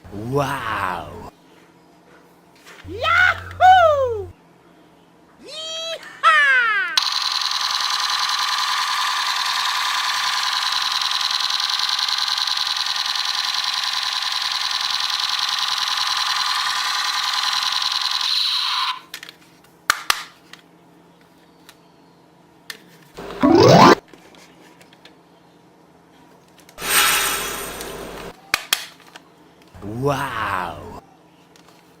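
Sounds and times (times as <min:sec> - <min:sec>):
toy gun buzzing rattle: 0:07.0 - 0:18.9.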